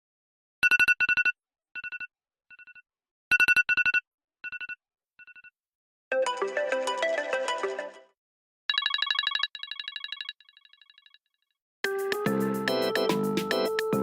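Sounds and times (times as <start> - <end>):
melodic ringtone: 6.1 - 8.0, 11.9 - 14.0
electronic trill ringtone: 8.7 - 11.1, 12.0 - 14.0.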